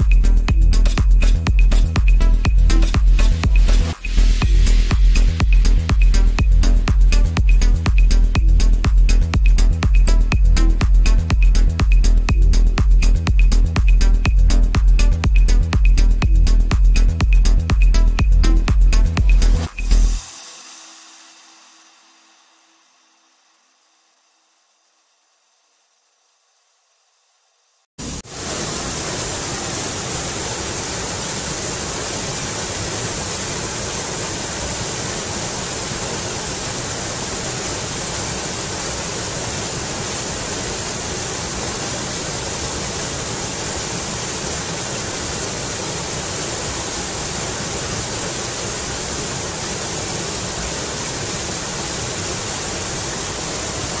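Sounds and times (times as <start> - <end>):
waterfall rushing: 28.0 - 54.0.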